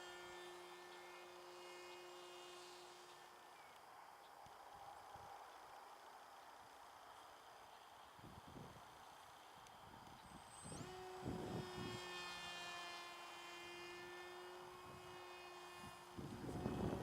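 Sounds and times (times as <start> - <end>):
electric motor propeller whine: 0.0 - 17.0
wind buffeting microphone: 10.8 - 12.0, 16.1 - 17.0.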